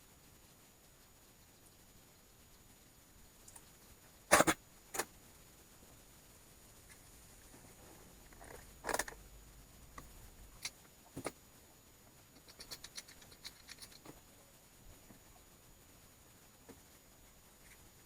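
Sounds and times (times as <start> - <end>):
small light clicks and ticks: 12.3 - 14.2.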